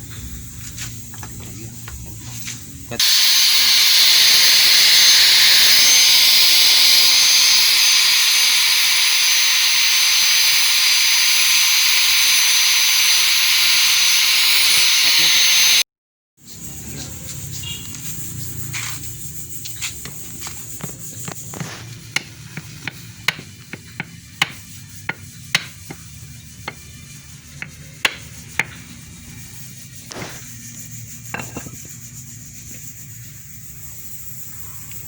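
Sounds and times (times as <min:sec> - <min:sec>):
steady hiss: 0:00.0 - 0:15.8.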